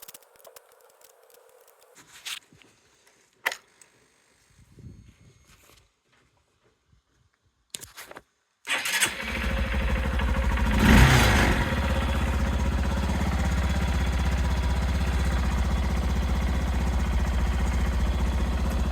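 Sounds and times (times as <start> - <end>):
motorcycle engine starting and idling: 8.7 - 18.9.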